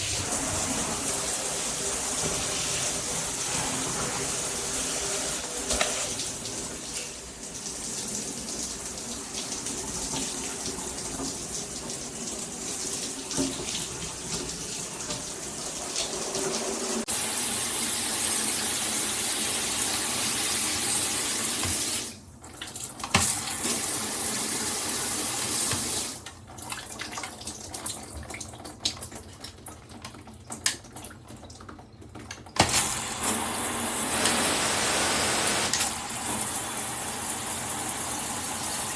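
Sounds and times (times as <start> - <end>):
shower head spraying water: 0.0 - 8.2, 32.6 - 38.9.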